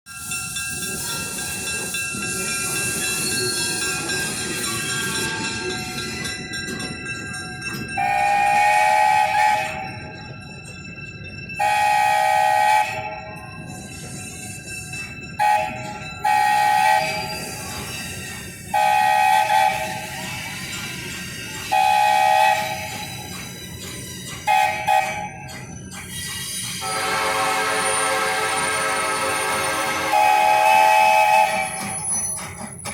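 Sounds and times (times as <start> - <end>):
train whistle chord: 8.0 - 9.9, 11.6 - 13.3, 15.4 - 17.3, 18.7 - 20.2, 21.7 - 23.0, 24.5 - 25.3, 26.8 - 31.9
high-pitched train whistle blasts: 8.0 - 10.0, 11.6 - 13.3, 15.4 - 17.7, 18.6 - 20.4, 21.6 - 23.2, 24.4 - 25.5, 26.4 - 32.3
low-pitched train whistle: 8.0 - 10.0, 11.6 - 13.3, 15.4 - 17.3, 18.7 - 20.2, 21.7 - 23.0, 24.5 - 25.4, 26.8 - 31.9.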